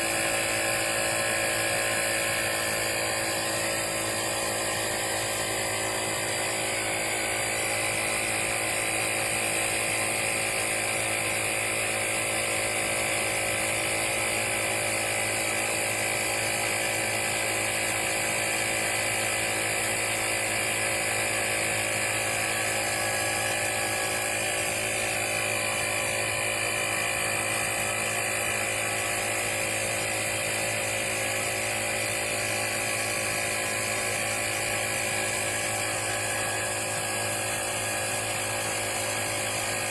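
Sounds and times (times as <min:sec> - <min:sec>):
tire inflator compressor clatter: 0:00.0 - 0:39.9.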